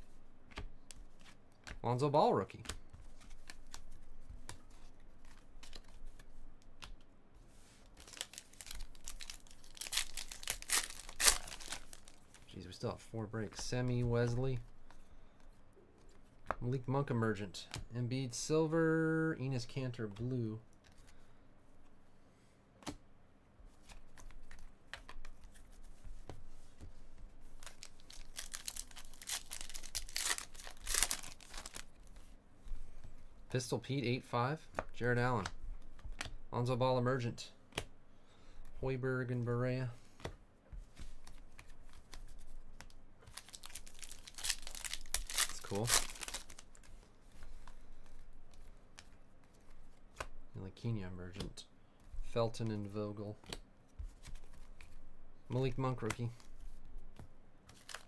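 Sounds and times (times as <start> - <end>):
card wrapper crinkling and tearing: 8.0 - 12.4, 27.6 - 31.9, 43.2 - 46.8, 57.7 - 58.0.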